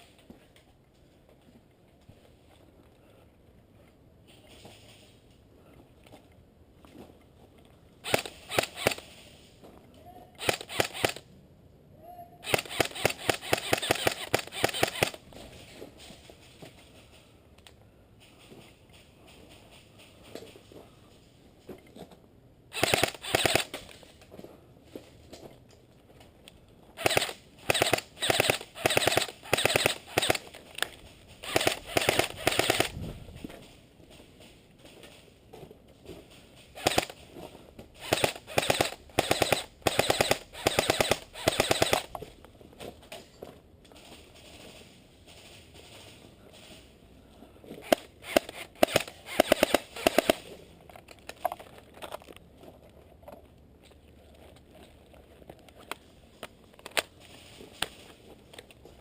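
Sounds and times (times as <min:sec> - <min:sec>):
airsoft gun firing bursts: 0:08.0 - 0:09.1, 0:10.4 - 0:11.2, 0:12.4 - 0:15.2, 0:22.7 - 0:23.8, 0:27.0 - 0:30.5, 0:31.4 - 0:33.0, 0:36.8 - 0:37.2, 0:38.0 - 0:42.2, 0:47.8 - 0:50.4.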